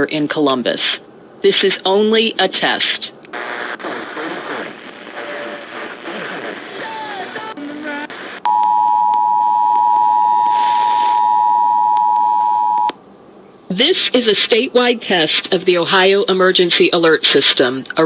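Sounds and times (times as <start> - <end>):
broadcast music: 4.4 - 8.4.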